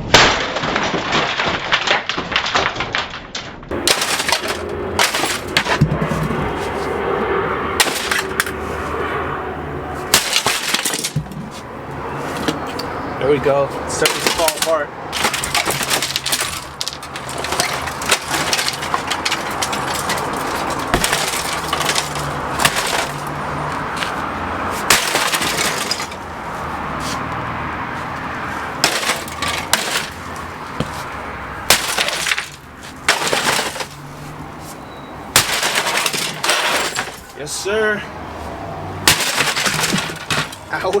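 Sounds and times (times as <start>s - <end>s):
plastic cracking and breaking: 0.0s - 6.2s, 14.0s - 26.4s
sledgehammer hitting plastic: 0.0s - 6.7s, 7.8s - 8.6s, 10.1s - 11.7s, 13.9s - 27.2s, 28.7s - 34.0s, 35.3s - 37.3s, 39.0s - 41.0s.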